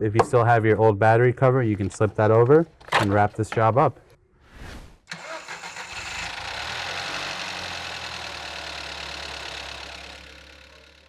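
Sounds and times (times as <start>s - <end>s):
car engine idling: 5.6s - 11.0s.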